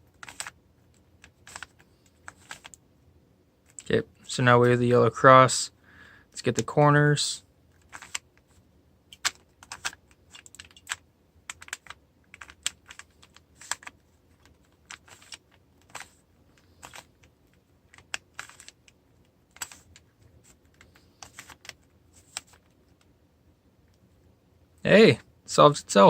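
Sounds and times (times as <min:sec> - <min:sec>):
cube layers clicking: 0:00.1 - 0:02.8, 0:09.1 - 0:22.6.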